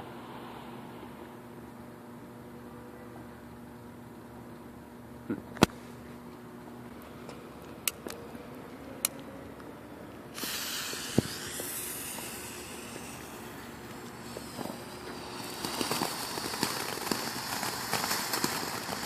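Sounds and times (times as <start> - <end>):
firework fountain hissing: 10.3 - 19.0.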